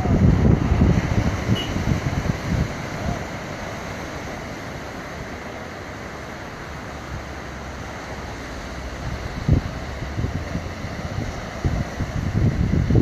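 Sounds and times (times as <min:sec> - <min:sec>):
wind on microphone: 0:00.0 - 0:05.4, 0:08.8 - 0:13.0
sea waves: 0:00.0 - 0:13.0.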